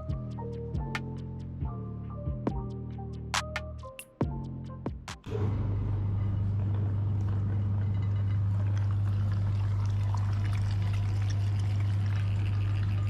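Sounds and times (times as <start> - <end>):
meat grinder humming: 5.3 - 13.0
crackle of jelly forced through: 8.4 - 13.0.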